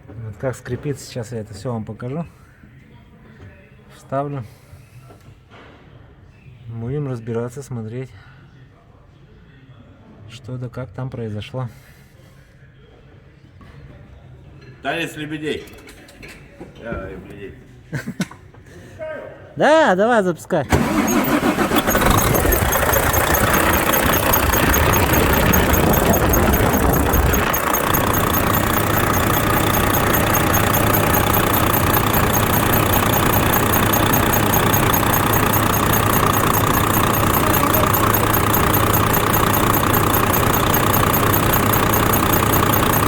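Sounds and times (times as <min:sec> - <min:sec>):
truck diesel engine idling: 0:20.7 - 0:43.0
rhythmic engine squeak: 0:20.8 - 0:43.0.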